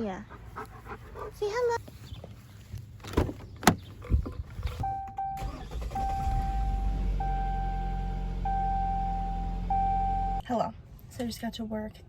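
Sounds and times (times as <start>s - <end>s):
car warning chime: 4.8s - 10.4s.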